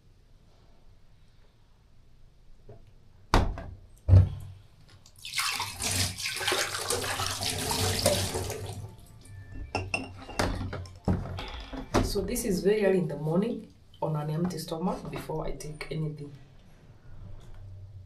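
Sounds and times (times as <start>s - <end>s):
water tap running: 5.2s - 9.0s.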